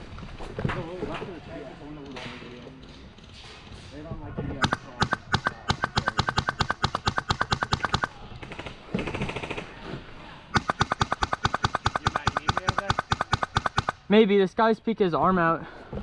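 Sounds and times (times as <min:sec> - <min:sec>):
airsoft rifle rapid firing: 0:04.6 - 0:09.8, 0:10.5 - 0:14.1.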